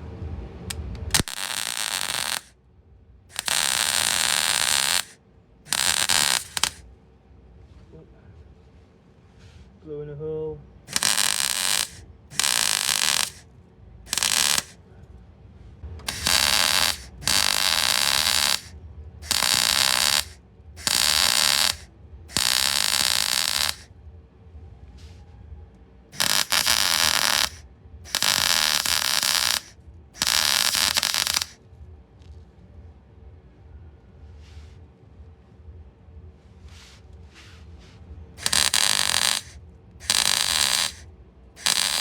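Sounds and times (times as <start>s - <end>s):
welder crackling: 0.7s - 2.5s, 3.3s - 6.8s, 10.9s - 13.4s, 14.1s - 14.8s, 16.1s - 23.9s, 26.2s - 31.6s, 38.4s - 41.0s, 41.6s - 42.0s.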